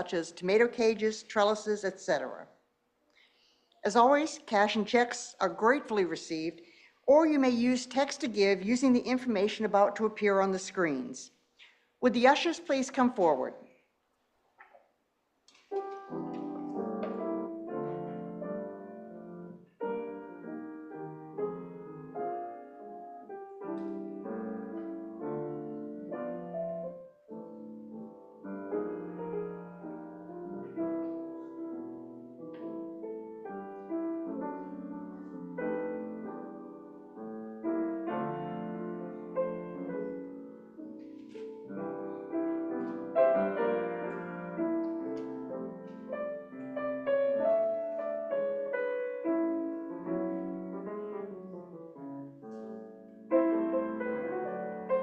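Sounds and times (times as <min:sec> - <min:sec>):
piano playing: 0:15.7 - 0:55.0.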